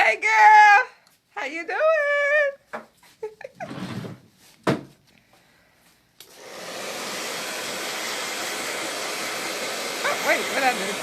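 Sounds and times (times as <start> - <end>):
hair dryer blowing: 6.2 - 11.0.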